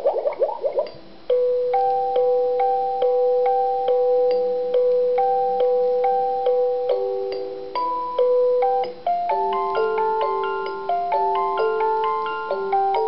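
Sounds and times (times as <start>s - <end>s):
bubbling water: 0.0s - 1.0s
alarm clock beeping melody: 1.3s - 13.0s.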